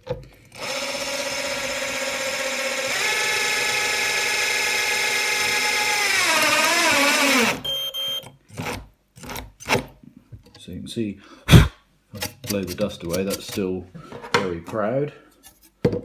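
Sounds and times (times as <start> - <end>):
electric drill whining: 0.5 - 7.7.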